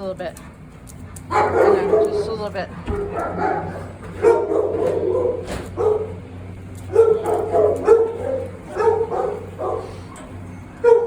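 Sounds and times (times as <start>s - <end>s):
dog barking: 1.3s - 6.2s, 6.9s - 10.0s.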